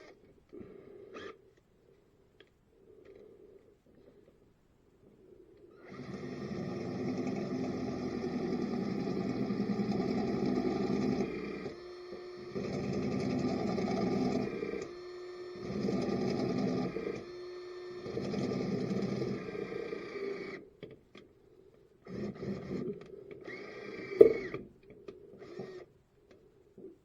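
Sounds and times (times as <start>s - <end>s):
power drill boring through metal: 5.8s - 20.6s, 22.1s - 24.7s, 25.4s - 25.9s.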